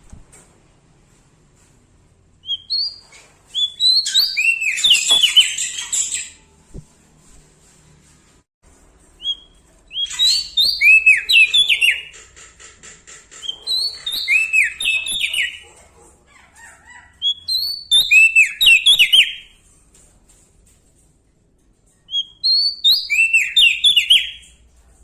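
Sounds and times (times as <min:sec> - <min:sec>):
bird trill: 0:02.4 - 0:06.5, 0:09.2 - 0:12.4, 0:13.3 - 0:15.8, 0:22.1 - 0:24.6.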